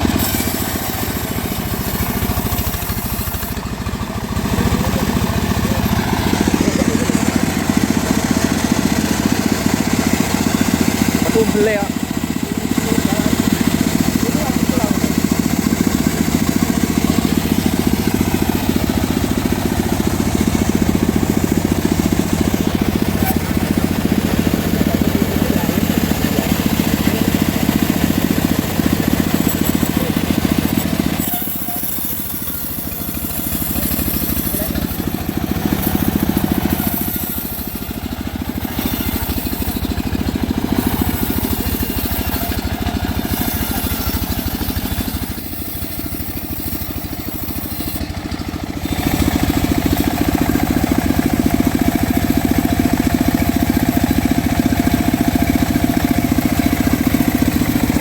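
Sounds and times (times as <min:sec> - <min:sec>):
bandsaw mill engine sawing wood: 0:00.0 - 0:58.0.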